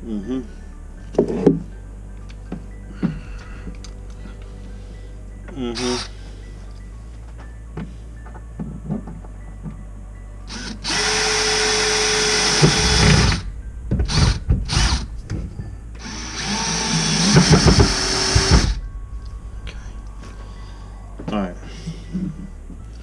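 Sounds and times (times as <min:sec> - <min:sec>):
cordless screw gun motor: 0:10.5 - 0:13.4.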